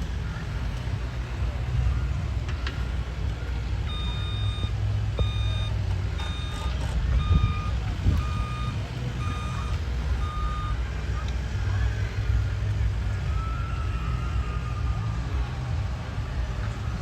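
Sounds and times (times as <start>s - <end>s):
low rumble: 0.0s - 17.0s
reversing alarm beeping: 3.8s - 11.8s.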